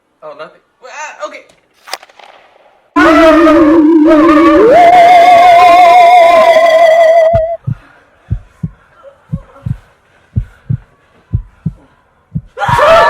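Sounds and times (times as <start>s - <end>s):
held wavering note: 3.0s - 7.6s
heartbeat thumps: 7.2s - 13.0s.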